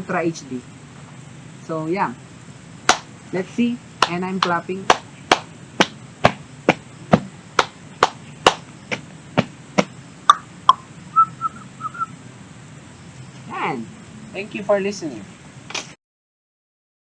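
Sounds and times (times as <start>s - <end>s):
hand clapping: 2.9s - 3.1s, 4.0s - 6.8s, 7.6s - 8.6s
faint high chirps: 9.9s - 14.5s.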